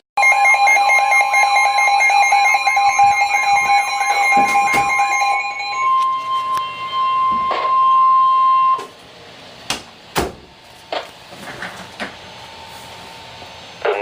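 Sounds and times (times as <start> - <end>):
steady electronic alert tone: 0.2 - 8.8.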